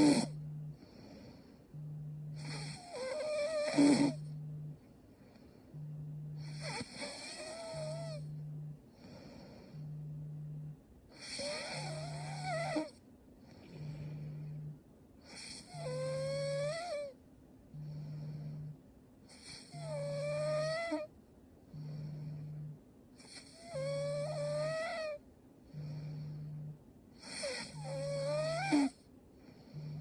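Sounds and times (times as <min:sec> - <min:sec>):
woman snoring with whistling wheeze: 0:00.0 - 0:04.8, 0:05.4 - 0:21.1, 0:21.7 - 0:30.0
low hum switching on and off: 0:01.6 - 0:02.8, 0:03.7 - 0:06.6, 0:07.6 - 0:08.9, 0:09.7 - 0:10.9.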